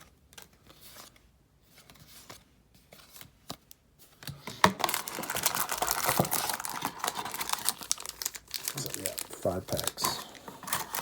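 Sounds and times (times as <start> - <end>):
wrapper tearing and crinkling: 4.8 - 10.1, 10.7 - 11.0.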